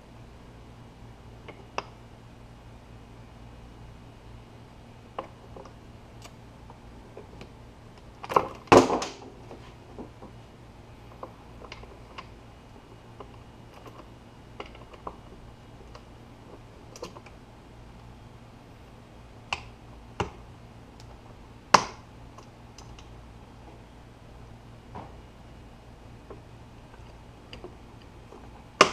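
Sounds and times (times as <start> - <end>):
low steady hum: 0.0 - 28.9.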